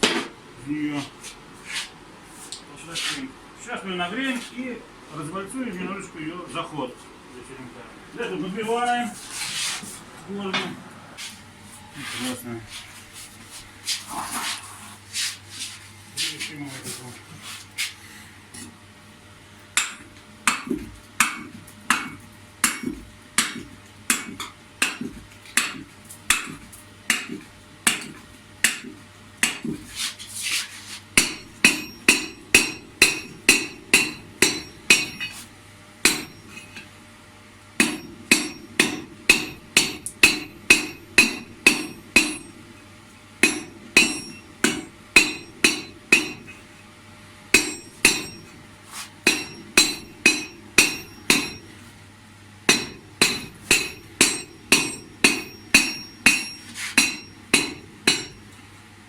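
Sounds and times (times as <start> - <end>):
steady low hum: 0.0 - 59.0
hammer striking hot steel: 19.8 - 29.8, 31.2 - 35.4, 36.0 - 36.8, 37.8 - 42.6, 43.4 - 46.6, 47.6 - 48.6, 49.2 - 51.8, 52.7 - 58.5.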